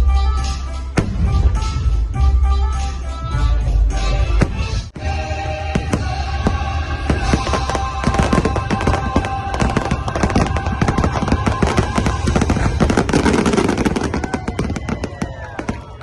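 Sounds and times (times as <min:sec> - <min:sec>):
fireworks crackling bangs: 0:04.5 - 0:16.0.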